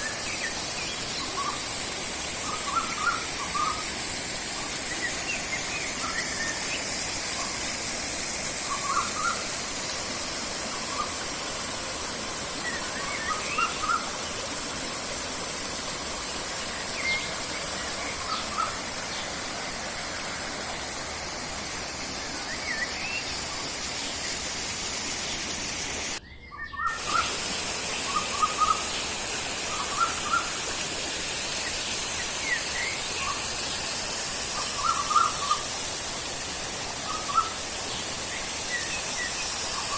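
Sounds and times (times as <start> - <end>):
river rushing: 0.0 - 26.2, 26.9 - 33.4
small birds chirping: 12.6 - 14.6, 15.9 - 20.9, 25.2 - 30.6, 31.6 - 33.9.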